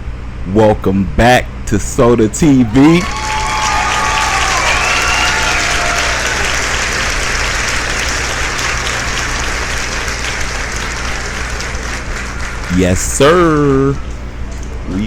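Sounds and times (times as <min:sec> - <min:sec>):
crowd applauding: 0:02.4 - 0:14.0
whoops and whistles: 0:02.6 - 0:06.8.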